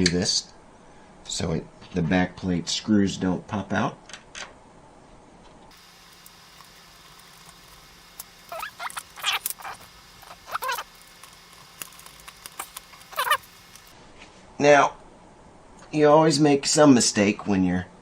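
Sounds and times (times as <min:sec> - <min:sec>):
small animal squeaking: 0:08.4 - 0:13.9.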